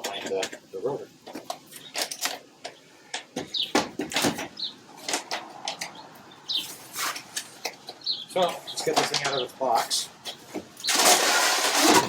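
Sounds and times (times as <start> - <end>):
handling knocks and scrapes: 6.6 - 12.0.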